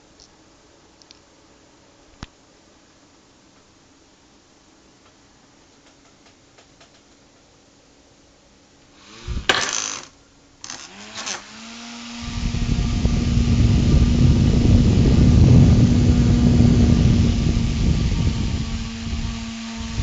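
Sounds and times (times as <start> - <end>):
fan motor hum: 1.8 - 20.0
rush of air from fan blades: 9.0 - 9.6, 11.7 - 20.0.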